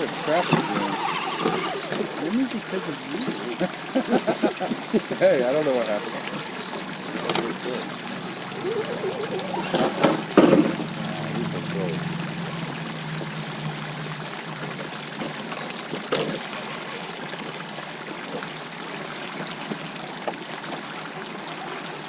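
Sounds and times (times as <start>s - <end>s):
flowing river water: 0.0s - 22.0s
low hum: 6.0s - 15.8s.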